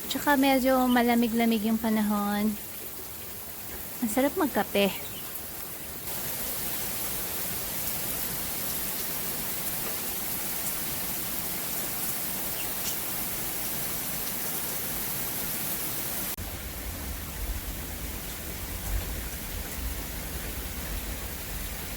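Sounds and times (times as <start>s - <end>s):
heavy rain: 0.0s - 21.9s
low rumble: 16.4s - 21.9s.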